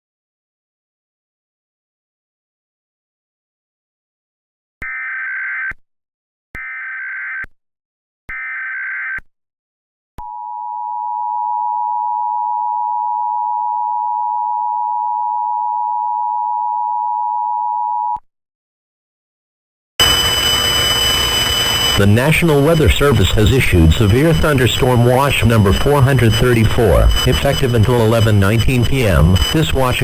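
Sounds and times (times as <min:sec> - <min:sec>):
data tone bursts: 0:20.0 - 0:30.0
two-tone attention signal: 0:20.0 - 0:30.0.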